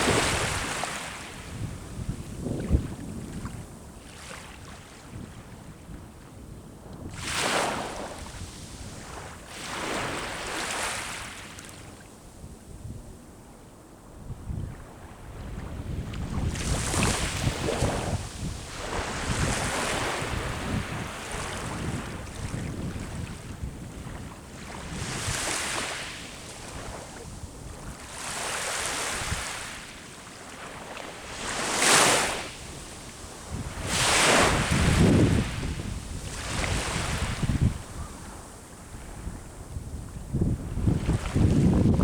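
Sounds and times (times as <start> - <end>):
wind buffeting microphone: 0.0 - 4.0, 14.1 - 28.3, 32.5 - 42.0
sea waves breaking on shore: 0.0 - 5.1, 7.1 - 11.9, 14.9 - 42.0.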